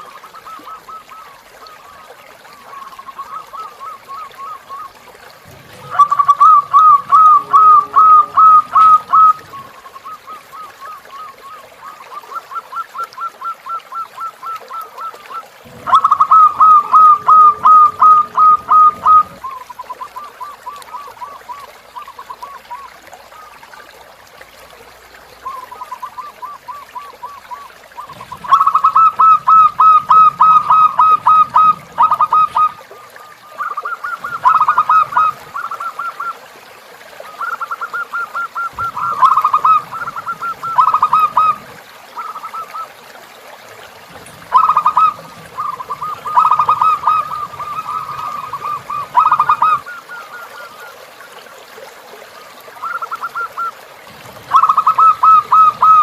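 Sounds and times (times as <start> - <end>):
doves cooing: 0.0 - 23.6, 25.4 - 36.5, 37.2 - 43.0, 43.8 - 51.5, 52.6 - 56.0.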